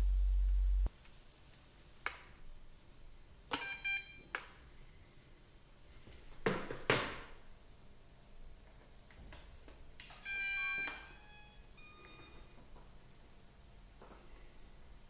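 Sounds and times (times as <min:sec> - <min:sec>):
loud low hum: 0:00.0 - 0:00.9
short electronic beeps: 0:10.2 - 0:12.5.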